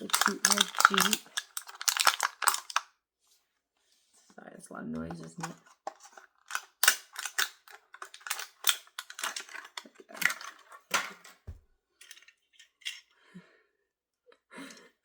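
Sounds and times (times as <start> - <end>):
plastic packaging crinkling: 0.0 - 2.8, 5.4 - 10.7.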